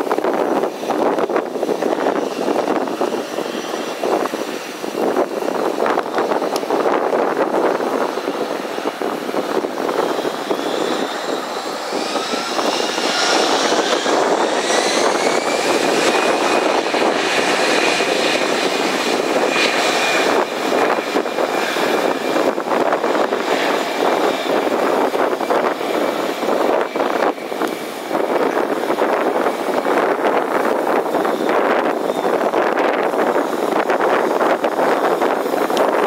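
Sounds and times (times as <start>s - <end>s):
jet engine roar: 0.0s - 36.0s
high whines rising in pitch: 7.8s - 27.5s.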